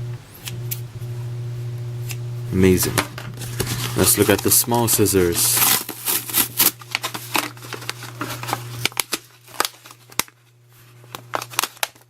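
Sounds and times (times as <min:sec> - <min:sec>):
packaging rustling: 0:02.9 - 0:12.0.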